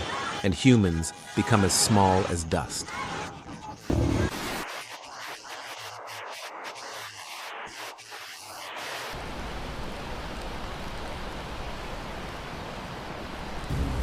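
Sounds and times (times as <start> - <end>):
floodwater and rain rushing: 9.2 - 14.0.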